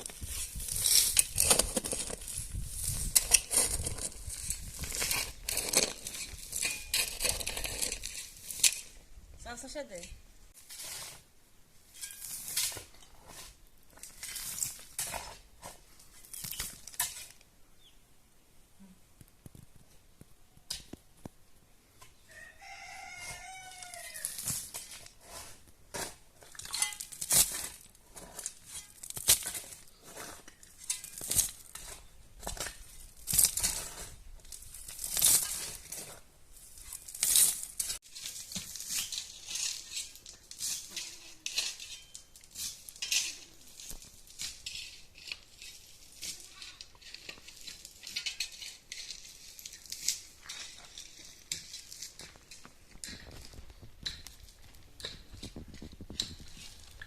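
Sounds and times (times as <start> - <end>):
rooster crowing: 22.3 - 24.3.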